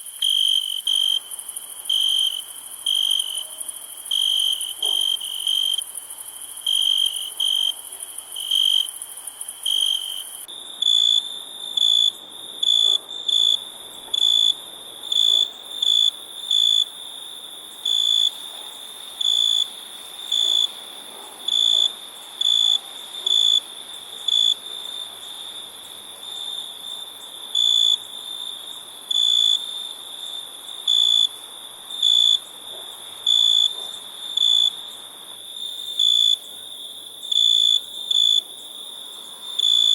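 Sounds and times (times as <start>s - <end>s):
high-pitched insect trill: 0.0s - 9.1s
crickets chirping: 0.0s - 39.9s.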